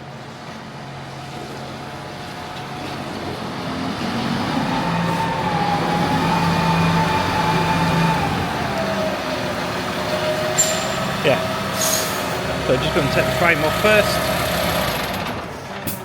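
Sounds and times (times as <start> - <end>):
engine whine: 0.0 - 16.0
vehicle engine running: 7.1 - 16.0.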